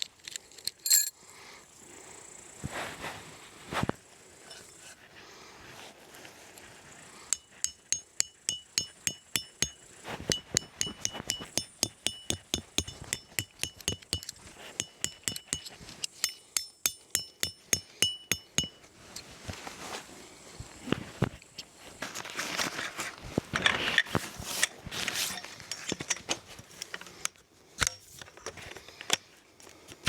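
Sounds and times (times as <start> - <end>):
hammer clinking on metal tent pegs: 0.6 - 1.1, 7.3 - 19.6, 23.5 - 27.2, 27.8 - 29.2.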